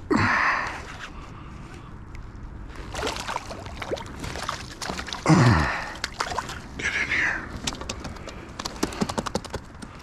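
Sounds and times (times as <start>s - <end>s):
water splashing beside kayak: 2.8s - 6.8s.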